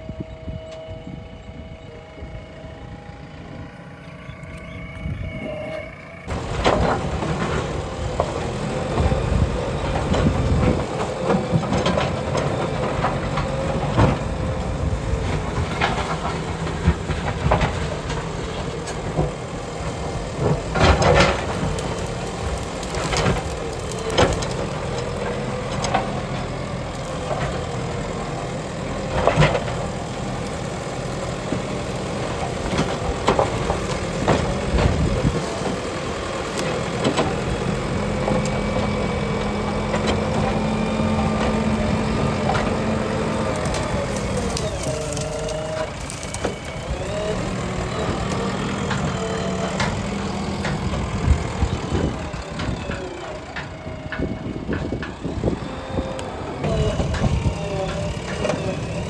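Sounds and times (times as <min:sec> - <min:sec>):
wavering whine: 0:00.0 - 0:06.3
diesel engine running: 0:00.0 - 0:59.0.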